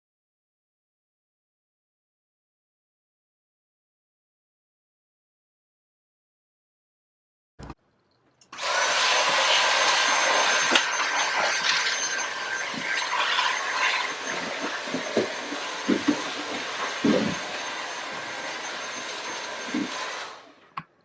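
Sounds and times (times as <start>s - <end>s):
vacuum cleaner running: 8.6s - 20.8s
knocks and rattles: 10.1s - 20.2s.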